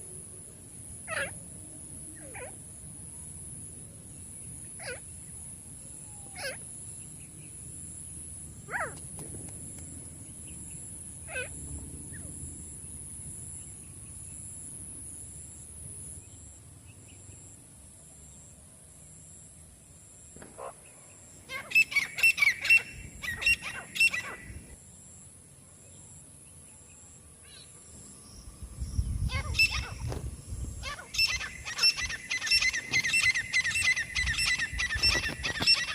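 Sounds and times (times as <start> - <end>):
francolin calling: 21.4 - 24.8, 27.4 - 35.9.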